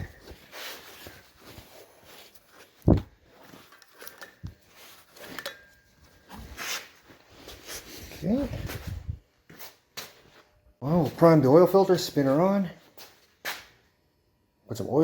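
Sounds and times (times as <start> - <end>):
knocks and rustles of handling: 0.0 - 11.5.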